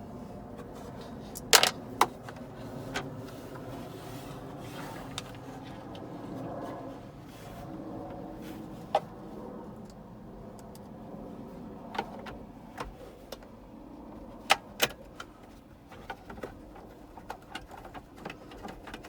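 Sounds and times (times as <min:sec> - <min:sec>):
clicks of screws and plastic trim: 0:01.4 - 0:02.2.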